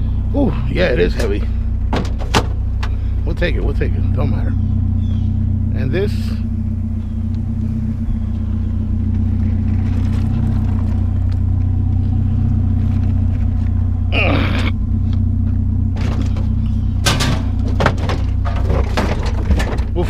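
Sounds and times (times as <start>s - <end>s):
vehicle engine hum: 0.0s - 20.0s
sharp clattering: 1.1s - 3.2s, 15.2s - 20.0s.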